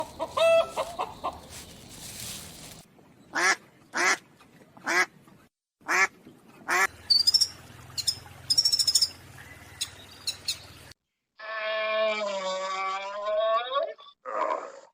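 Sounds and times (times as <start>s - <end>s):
small birds chirping trills: 0.0s - 2.8s.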